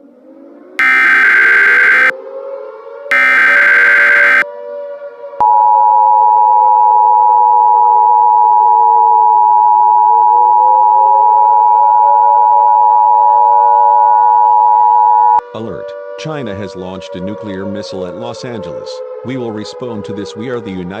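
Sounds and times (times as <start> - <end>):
harsh buzz: 0.8 - 2.1, 3.1 - 4.4
two-tone alarm: 0.8 - 2.2, 3.1 - 4.5, 5.4 - 15.4.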